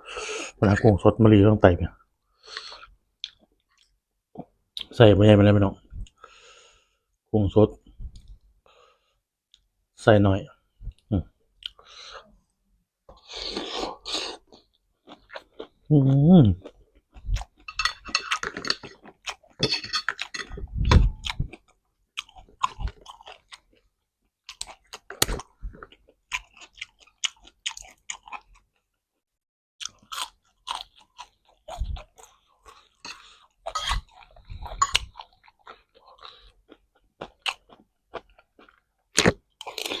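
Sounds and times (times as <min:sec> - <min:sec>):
person chewing crunchy food: 0:13.2 - 0:15.9, 0:16.6 - 0:28.9, 0:29.8 - 0:40.0.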